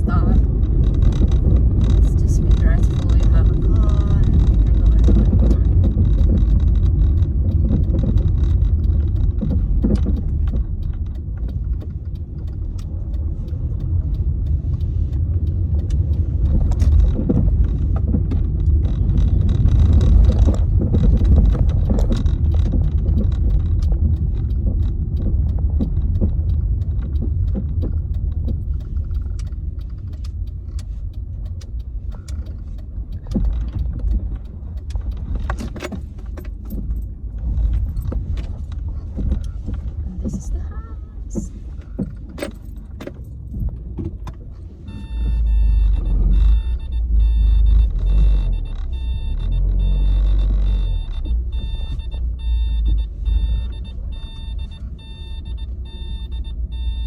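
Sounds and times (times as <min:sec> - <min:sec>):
light rattling clicks: 0:00.0 - 0:45.1
car road noise rumble: 0:00.0 - 0:57.0.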